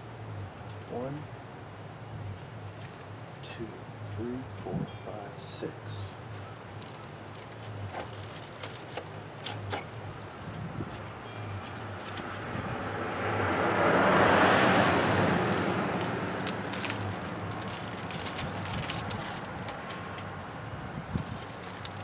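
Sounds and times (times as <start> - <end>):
vehicle passing: 10.1 - 22.0.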